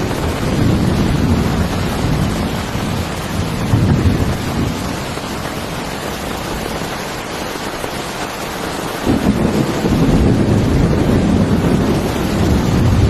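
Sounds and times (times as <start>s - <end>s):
low thunder rumble: 0.0s - 7.3s, 8.9s - 13.0s
heavy rain: 0.0s - 13.0s.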